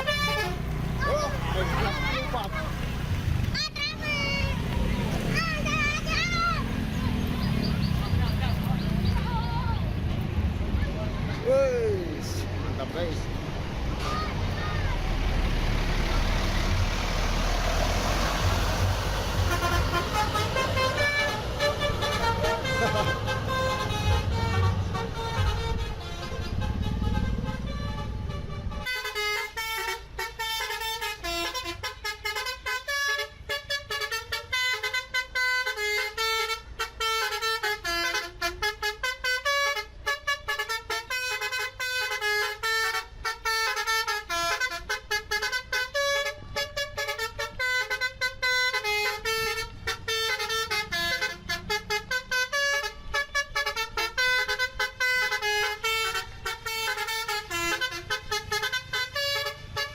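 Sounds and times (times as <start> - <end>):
musical bus horn playing a tune: 0.0 - 2.0, 17.4 - 59.9.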